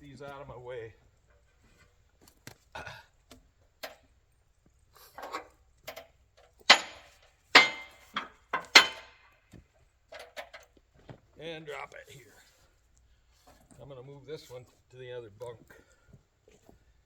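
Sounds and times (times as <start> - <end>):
knocks and clatter of gear: 5.1 - 11.5.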